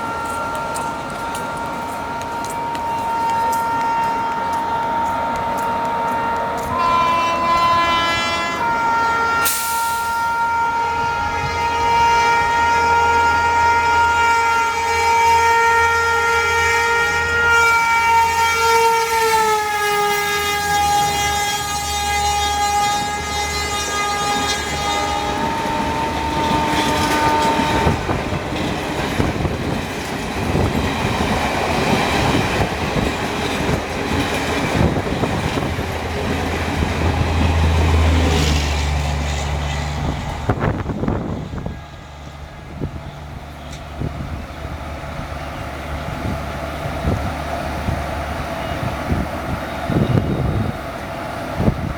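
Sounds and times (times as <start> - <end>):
locomotive horn: 0.0 - 29.8, 30.5 - 51.9
train wheels clattering on rail joints: 19.7 - 41.4.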